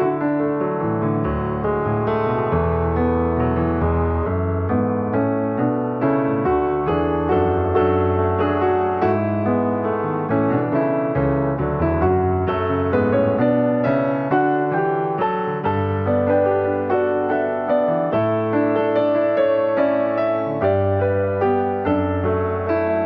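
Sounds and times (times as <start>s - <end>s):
piano music: 0.0s - 23.0s.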